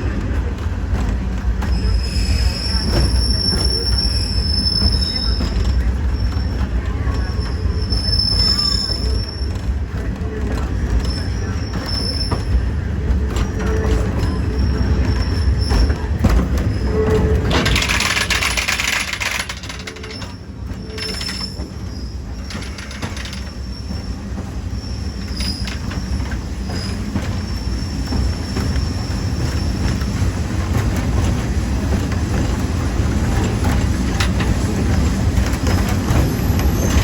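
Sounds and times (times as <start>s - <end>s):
train rumbling on rails: 0.0s - 37.0s
high wheel squeals: 1.6s - 30.4s.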